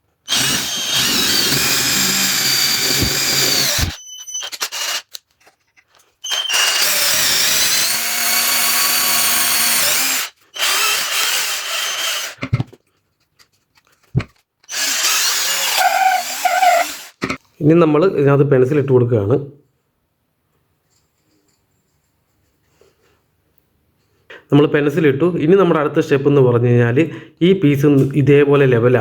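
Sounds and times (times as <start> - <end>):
electric drill boring into wood: 0.3 - 5.2, 6.3 - 12.4, 14.7 - 17.2.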